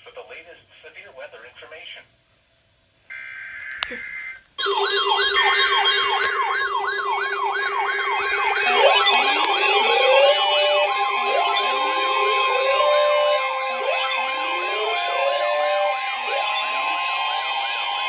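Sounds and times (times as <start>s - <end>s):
electronic siren yelp: 3.2s - 18.0s
rising siren wails: 4.6s - 18.0s.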